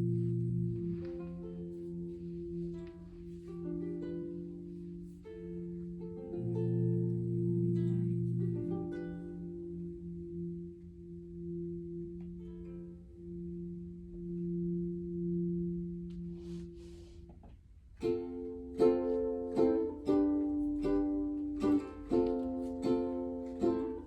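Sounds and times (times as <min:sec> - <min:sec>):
held low tone: 0:00.0 - 0:18.8
plucked string chords strummed: 0:06.0 - 0:10.5.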